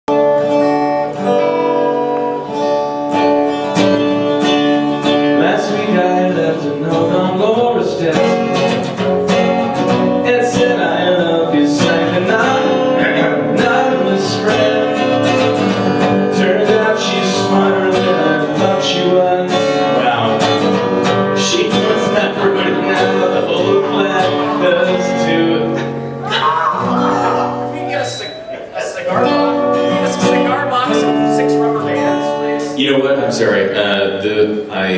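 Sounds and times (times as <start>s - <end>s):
acoustic guitar strumming: 0.1s - 34.9s
person singing: 5.0s - 8.7s, 10.2s - 15.2s, 16.1s - 20.6s, 21.2s - 27.6s, 29.1s - 34.9s.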